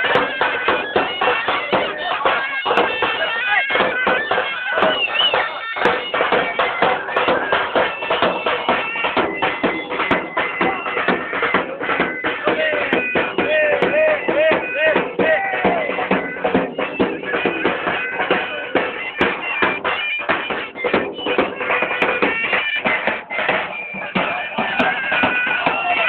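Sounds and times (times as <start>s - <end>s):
reedy wind instrument melody: 0.0s - 26.0s.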